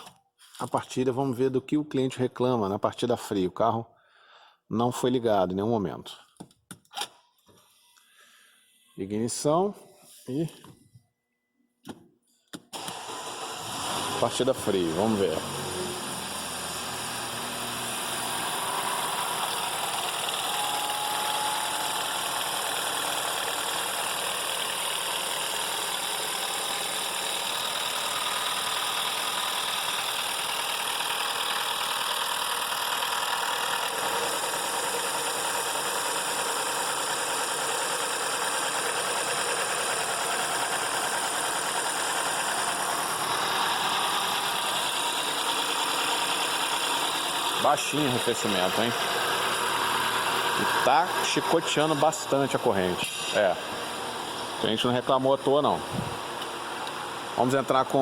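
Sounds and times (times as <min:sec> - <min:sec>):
man talking: 0:00.6 - 0:03.9, 0:04.7 - 0:06.3, 0:09.0 - 0:10.7, 0:14.2 - 0:15.6, 0:47.6 - 0:49.0, 0:50.6 - 0:53.8, 0:54.6 - 0:56.0, 0:57.4 - 0:58.0
car engine idling: 0:13.0 - 0:58.0.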